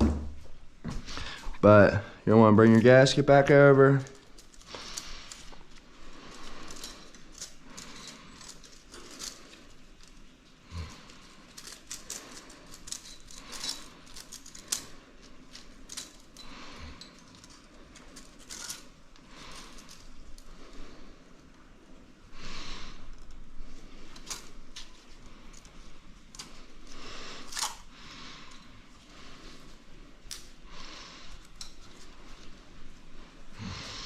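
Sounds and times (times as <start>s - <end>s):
metallic clicks and rattles: 4.2s - 20.6s.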